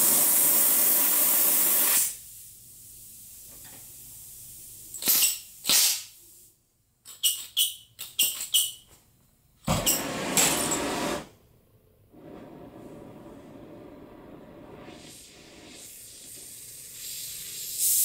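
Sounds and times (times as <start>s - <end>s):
torch flame hissing: 0.0s - 2.2s, 9.8s - 11.3s, 12.1s - 18.0s
loud gas rush: 12.1s - 18.0s.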